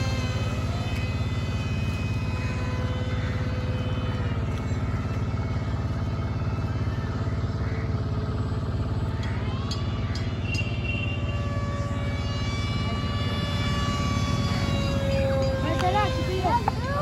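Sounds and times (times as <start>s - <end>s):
motor drone with low rumble: 0.0s - 17.0s.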